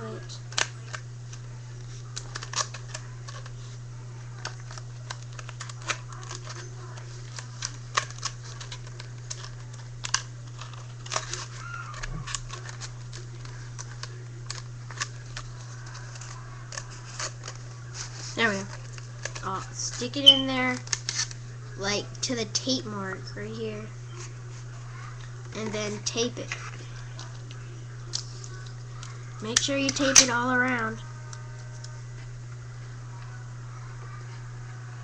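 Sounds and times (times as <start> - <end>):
low electrical hum: 0.0 - 35.0
paper tubes crinkling: 0.5 - 21.5, 23.6 - 32.3.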